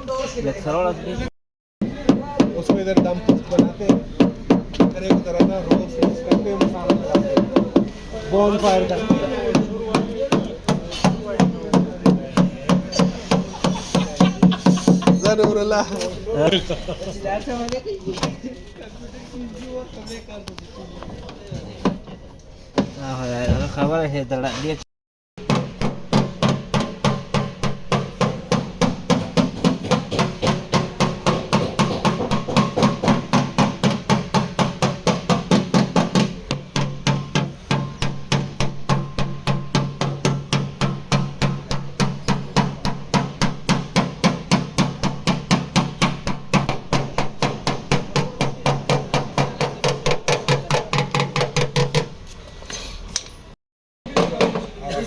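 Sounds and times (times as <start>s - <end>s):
hammer tapping sheet metal: 9.1s - 15.9s, 25.4s - 52.2s.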